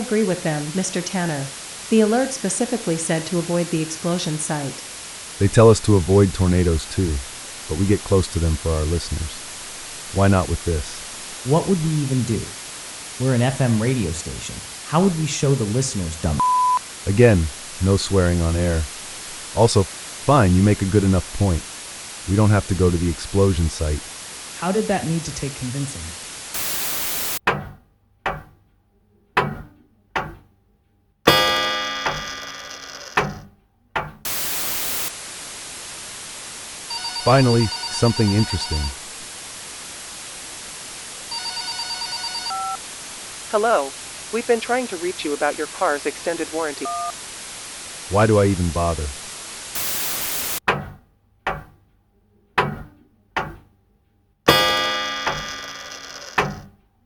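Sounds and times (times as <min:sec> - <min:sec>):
radio static burst: 0:03.3 - 0:27.4, 0:31.3 - 0:33.2, 0:34.3 - 0:50.6, 0:54.5 - 0:56.5
piano-like struck notes: 0:31.3 - 0:32.6, 0:54.5 - 0:55.9
ringing keyboard chord: 0:31.3 - 0:32.6, 0:54.5 - 0:55.9
piano-like keyboard notes: 0:54.5 - 0:55.5.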